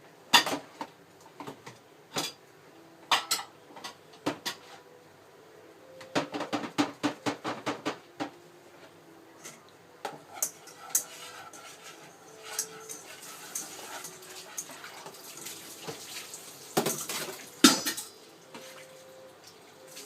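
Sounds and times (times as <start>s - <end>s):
dishes and cutlery clinking: 0.3s - 2.4s, 3.1s - 4.9s, 9.4s - 16.2s, 16.8s - 18.9s.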